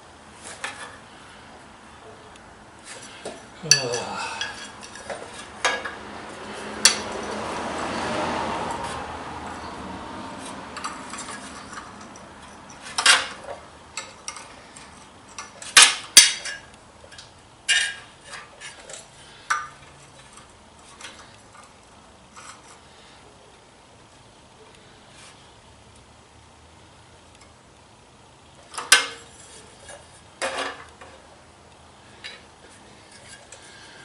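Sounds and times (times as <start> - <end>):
metal tools clanking: 2.9 - 8.0, 10.4 - 22.8.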